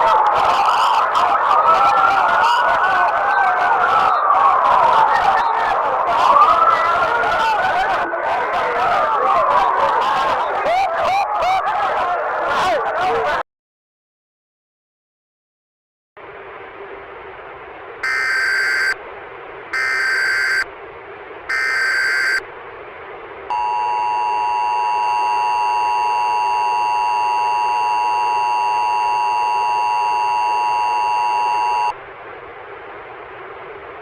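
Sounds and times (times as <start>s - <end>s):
two-tone attention signal: 18.0s - 19.0s, 19.8s - 20.7s, 21.5s - 22.4s, 23.5s - 31.9s
warbling digital data tones: 18.0s - 19.0s, 19.8s - 20.6s, 21.5s - 22.4s, 23.5s - 31.9s.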